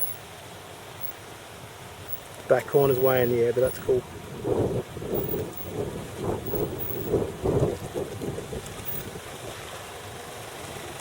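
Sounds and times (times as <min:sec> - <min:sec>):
steady hiss: 0:00.0 - 0:07.8
wind buffeting microphone: 0:02.8 - 0:09.8.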